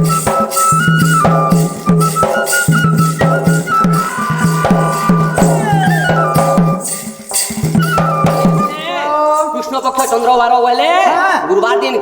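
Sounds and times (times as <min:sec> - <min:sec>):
drum and rattle beat: 0:00.0 - 0:08.8
flute melody: 0:00.0 - 0:09.0.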